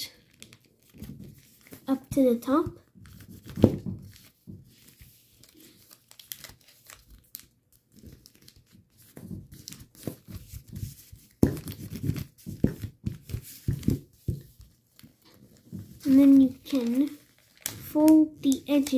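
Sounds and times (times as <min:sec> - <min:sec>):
paper rustling and crinkling: 0:00.1 - 0:18.9
sharp paper creasing: 0:03.0 - 0:12.5, 0:14.9 - 0:18.9.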